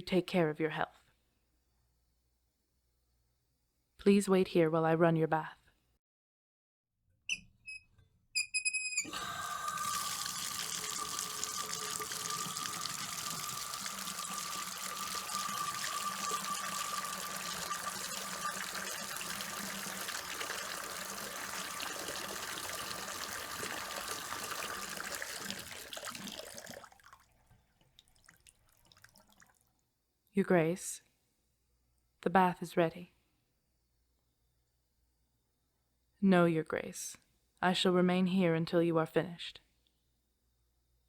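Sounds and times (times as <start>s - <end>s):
brief high squeak: 7.3s - 9.1s
tap water filling bath: 9.1s - 29.8s.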